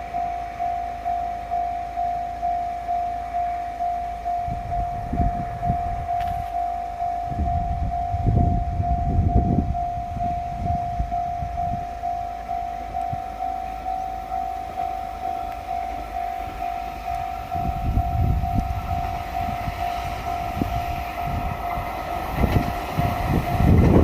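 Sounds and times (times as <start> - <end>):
low rumble: 4.2 - 24.0
level crossing bell clanging: 9.8 - 23.7.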